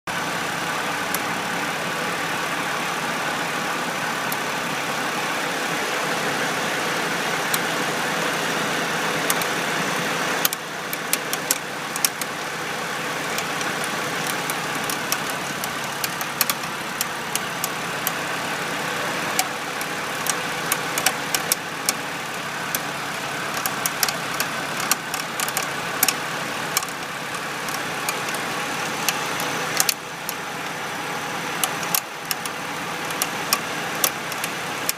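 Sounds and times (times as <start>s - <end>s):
car engine idling: 0.1s - 34.9s
sharp ticks and clicks: 9.2s - 9.6s, 10.4s - 18.3s, 19.2s - 34.9s.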